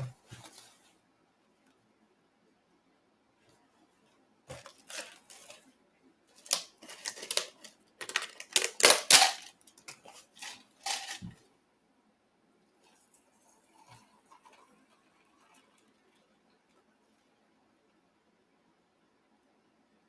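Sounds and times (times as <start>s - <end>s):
rustling and scraping handling noises: 0.0s - 1.0s, 3.5s - 5.8s, 6.4s - 11.4s.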